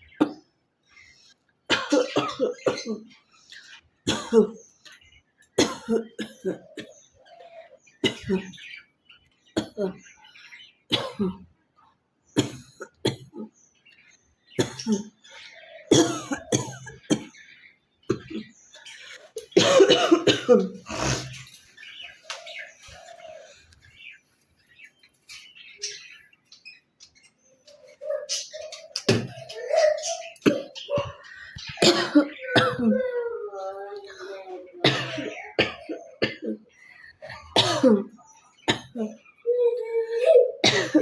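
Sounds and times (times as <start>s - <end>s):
woman coughing: 1.7s - 3.0s, 4.1s - 4.6s, 5.6s - 6.9s, 15.9s - 17.3s, 19.5s - 21.4s, 31.8s - 33.0s, 34.8s - 36.6s, 37.5s - 38.1s, 40.6s - 41.0s
woman clearing throat: 15.9s - 17.3s, 19.6s - 21.4s, 31.8s - 33.0s.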